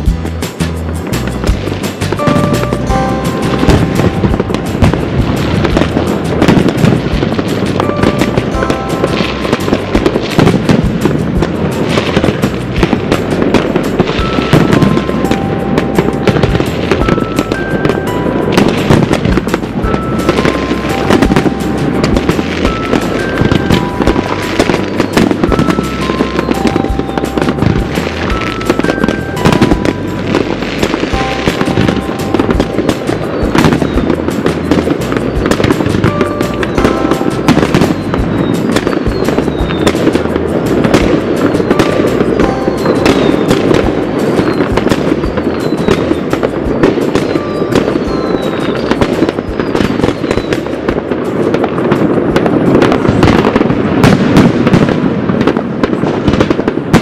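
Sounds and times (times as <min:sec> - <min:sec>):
fireworks bangs and cracks: 0:00.0 - 0:57.0
faint tune: 0:00.7 - 0:51.6
falling firework whistles: 0:13.5 - 0:40.2, 0:40.8 - 0:51.0.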